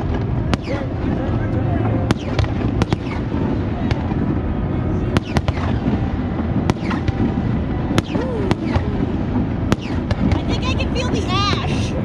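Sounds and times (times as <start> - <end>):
distant booms and echoes: 0.0 - 12.0
fireworks bangs: 0.0 - 12.0.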